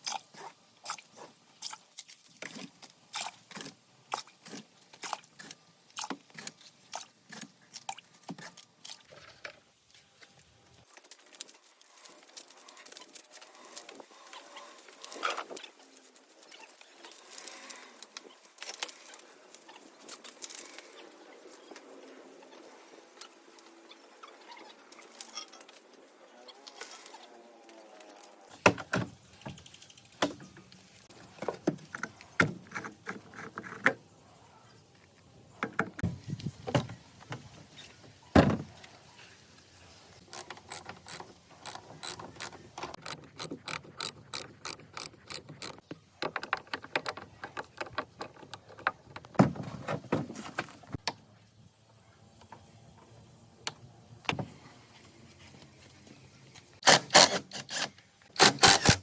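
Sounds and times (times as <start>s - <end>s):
ratchet ticking: 40.3s - 45.8s
metallic clicks and knocks: 40.3s - 49.4s.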